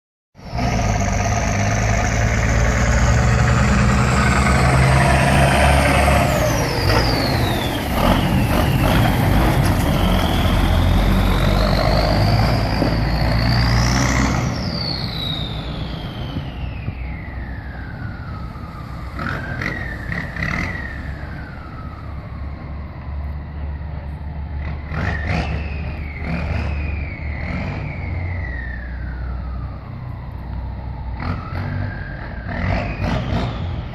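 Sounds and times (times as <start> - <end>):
truck engine rumble: 0.4 - 33.9
turbocharger whistle: 0.6 - 17.9, 24.9 - 29.5.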